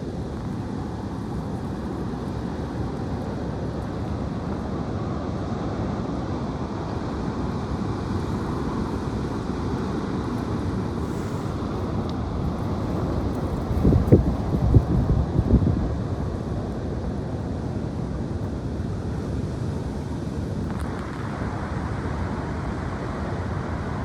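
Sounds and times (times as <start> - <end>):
wind on microphone: 7.6 - 16.7.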